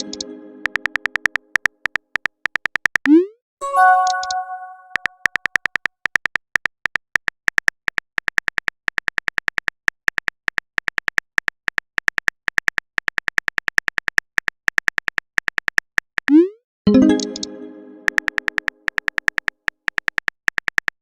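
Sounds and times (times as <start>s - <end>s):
keyboard typing clicks: 0.0s - 5.8s, 16.2s - 21.0s.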